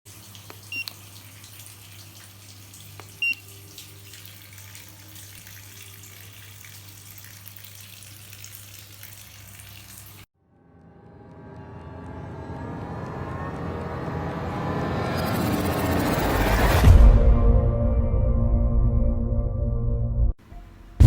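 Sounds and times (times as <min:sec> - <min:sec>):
water running from a tap: 0:00.1 - 0:10.3.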